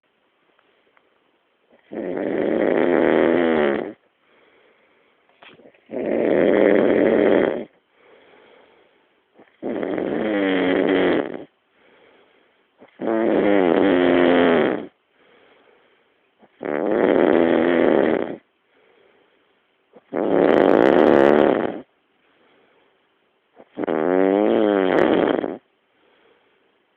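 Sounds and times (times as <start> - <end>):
man snoring heavily: 1.8 - 4.0, 5.9 - 8.4, 9.4 - 11.5, 12.8 - 15.0, 16.5 - 18.4, 20.0 - 21.9, 23.6 - 25.7.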